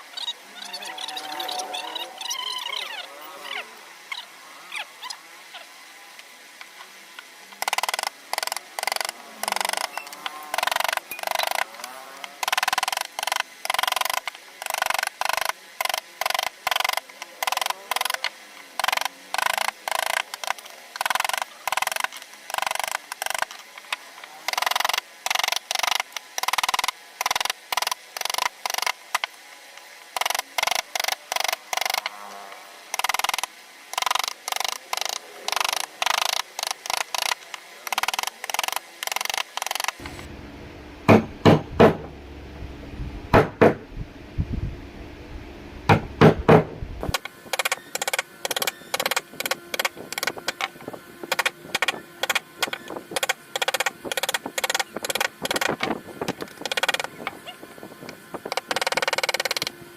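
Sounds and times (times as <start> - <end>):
low rumble: 40.0 - 47.1.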